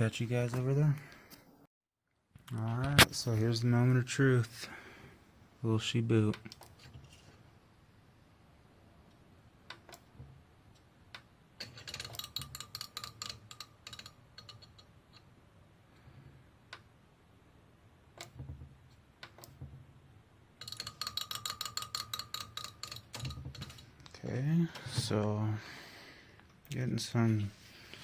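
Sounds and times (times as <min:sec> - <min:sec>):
fan blades ticking on wire: 0:11.2 - 0:15.3, 0:20.6 - 0:24.1.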